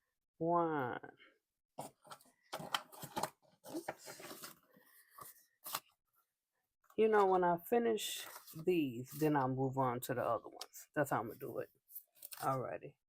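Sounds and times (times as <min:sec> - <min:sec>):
paper rustling: 0:01.8 - 0:06.0, 0:08.2 - 0:09.4, 0:11.9 - 0:12.7.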